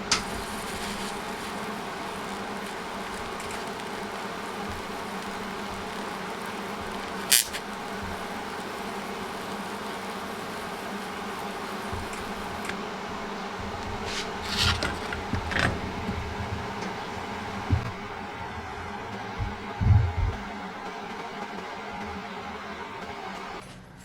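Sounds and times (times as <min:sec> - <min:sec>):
sharp crack: 0:00.0 - 0:18.2
electrical buzz: 0:00.0 - 0:23.6.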